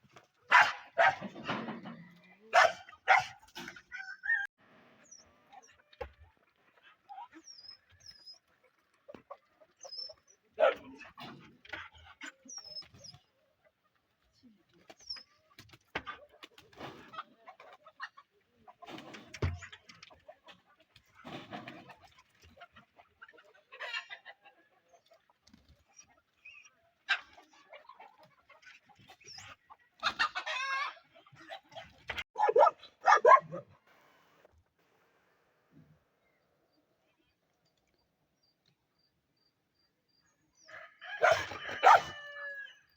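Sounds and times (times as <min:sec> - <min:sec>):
chickens clucking and calling: 0:21.8 - 0:25.8, 0:27.0 - 0:33.7, 0:40.7 - 0:42.8.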